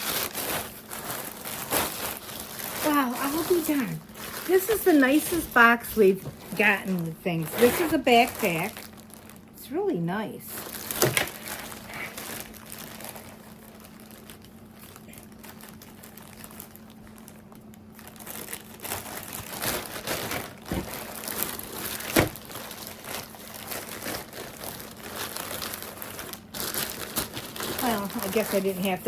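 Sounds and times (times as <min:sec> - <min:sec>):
packaging crinkling and rustling: 0:00.0 - 0:29.0.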